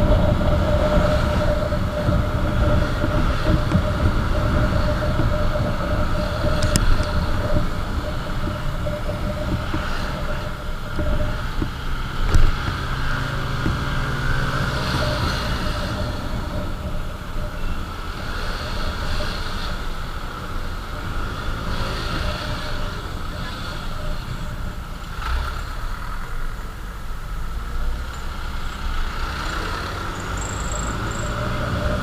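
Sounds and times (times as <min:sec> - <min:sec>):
wind rush on microphone: 0:00.0 - 0:25.2
motorcycle engine and tyre rumble: 0:00.0 - 0:32.0.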